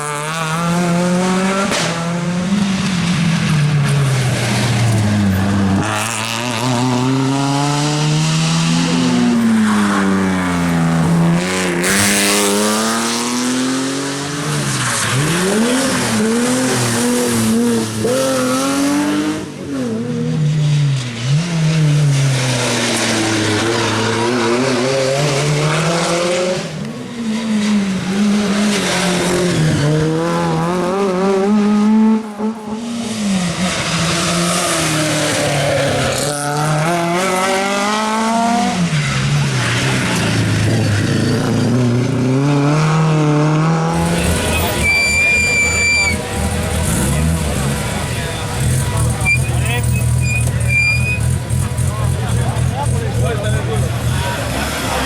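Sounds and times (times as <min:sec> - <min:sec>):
rally car engine revving: 0:00.0 - 0:55.0
tyres squealing: 0:44.0 - 0:47.1, 0:48.1 - 0:51.6.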